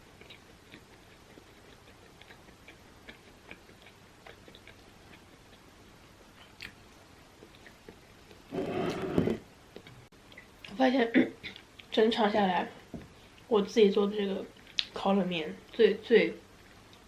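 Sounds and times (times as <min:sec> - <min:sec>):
chewing mouth clicks: 0:00.0 - 0:06.8, 0:07.4 - 0:08.4.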